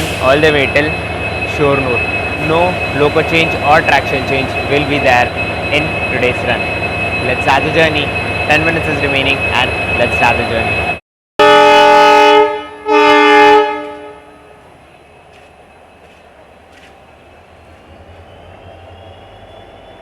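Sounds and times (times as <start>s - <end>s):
low rumble of train: 0.0s - 20.0s
locomotive horn blasts: 11.4s - 14.6s.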